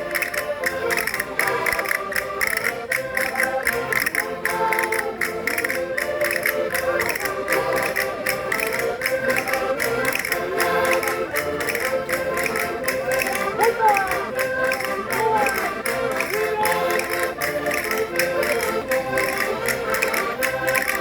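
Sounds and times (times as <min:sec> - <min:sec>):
concertinas playing folk dance tune: 0:00.0 - 0:21.0
steady percussive beat: 0:03.9 - 0:17.9.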